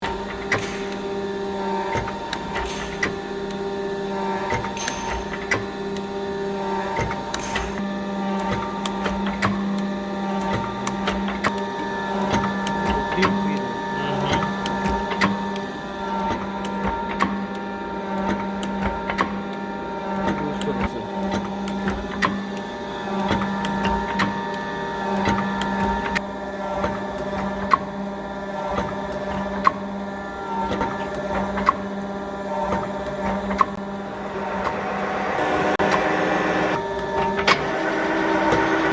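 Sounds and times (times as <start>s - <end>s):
machine motor hum: 0.0s - 38.9s
mechanism clicking and knocking: 1.8s - 3.7s, 4.3s - 6.1s, 6.9s - 17.6s.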